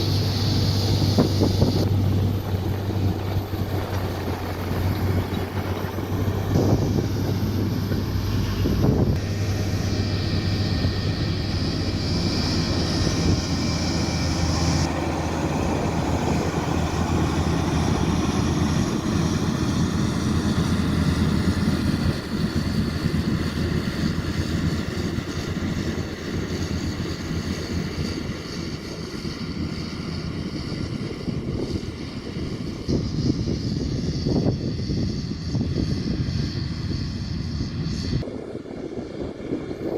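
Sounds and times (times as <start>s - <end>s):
bulldozer diesel engine running: 0.0s - 31.2s
high whine: 0.0s - 39.9s.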